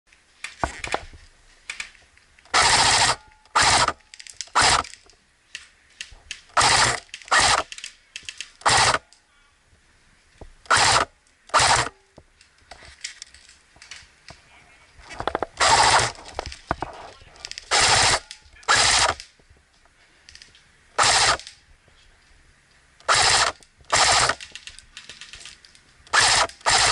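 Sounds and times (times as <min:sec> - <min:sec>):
airsoft guns firing bursts: 0:02.5 - 0:04.0, 0:06.6 - 0:07.8, 0:08.6 - 0:09.0, 0:10.7 - 0:11.9, 0:15.6 - 0:16.2, 0:17.7 - 0:19.2, 0:23.1 - 0:24.6, 0:26.1 - 0:26.9.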